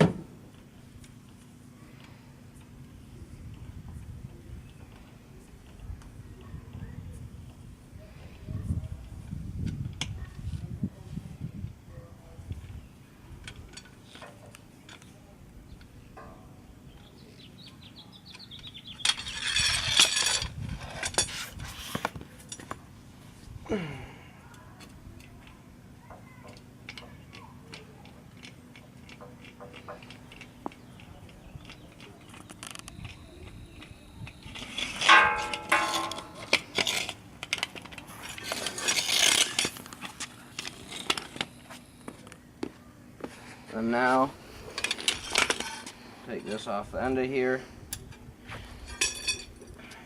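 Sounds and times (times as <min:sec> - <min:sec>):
loud metal scraping: 0:34.5 - 0:41.4
sharp metal clinks: 0:34.6 - 0:37.1
car jack clanking and rattling: 0:34.6 - 0:41.5
clicks and knocks: 0:35.0 - 0:38.6.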